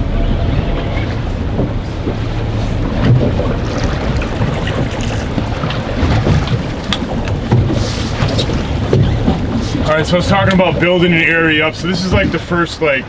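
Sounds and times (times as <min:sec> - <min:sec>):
water sloshing: 0:00.0 - 0:13.0
wind buffeting microphone: 0:00.0 - 0:13.0
small knocks on boat: 0:00.8 - 0:11.0.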